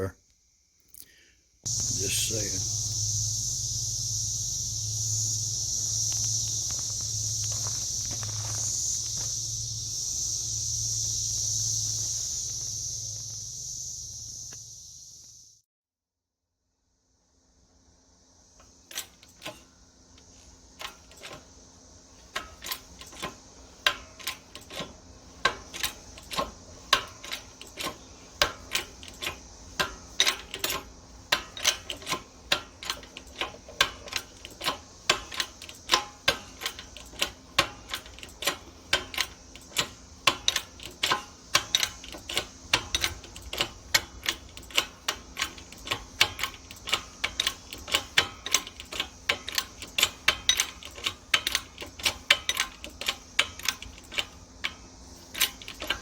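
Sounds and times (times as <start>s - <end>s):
sharp clicks: 22.3s - 56.0s.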